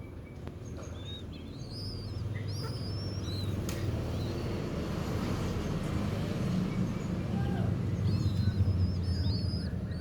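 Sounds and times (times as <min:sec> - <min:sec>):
small bird chirping: 0:00.2 - 0:04.8, 0:07.9 - 0:10.0.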